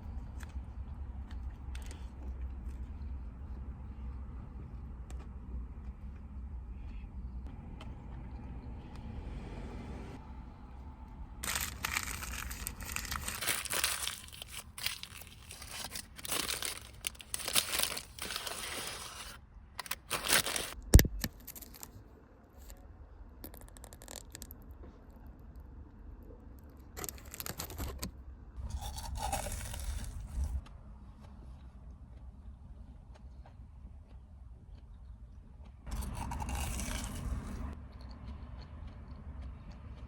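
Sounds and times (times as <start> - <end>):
crinkling and tearing: 11.4 - 22.0, 27.0 - 28.1, 28.7 - 30.6, 35.9 - 37.7.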